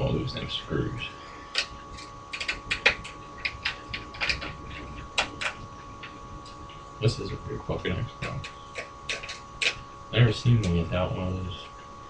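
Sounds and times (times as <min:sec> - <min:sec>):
small hard parts clicking: 0:01.5 - 0:06.6, 0:08.2 - 0:09.8.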